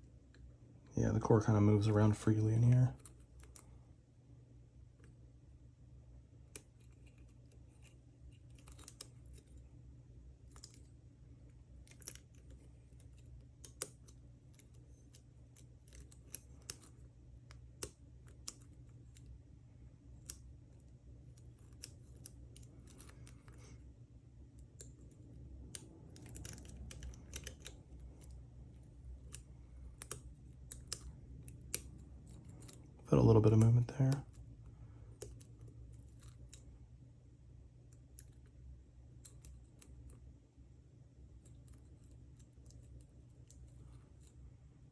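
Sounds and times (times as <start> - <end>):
steady low hum: 0.0 - 44.9
lock pick clicks and scrapes: 24.6 - 28.4.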